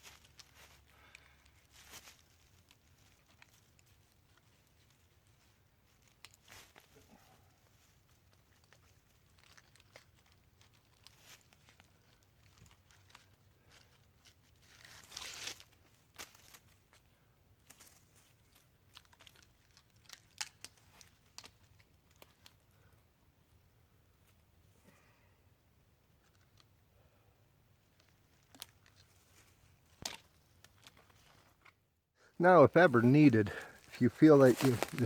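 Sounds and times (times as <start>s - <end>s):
small crackles and clicks: 0.0s - 7.0s, 7.8s - 17.0s, 17.6s - 22.6s, 27.9s - 31.8s, 33.1s - 35.0s
rustling in leaf litter: 32.8s - 35.0s.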